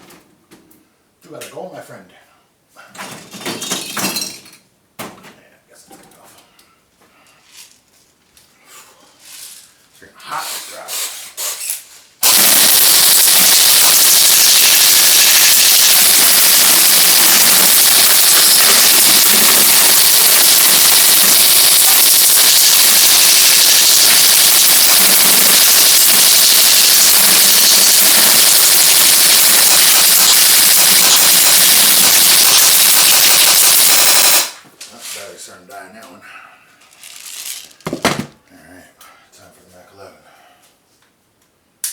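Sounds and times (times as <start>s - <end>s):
airsoft gun firing full auto: 12.2s - 34.6s.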